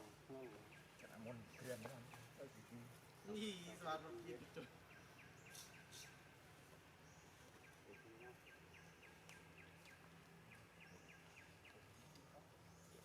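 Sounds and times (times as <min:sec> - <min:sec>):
low steady hum: 0:02.2 - 0:13.0.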